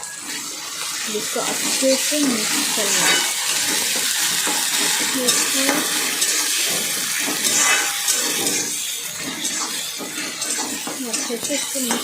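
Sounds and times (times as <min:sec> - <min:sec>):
paste sizzling in hot oil: 0:00.0 - 0:12.0
spoon scraping pan: 0:00.4 - 0:12.0.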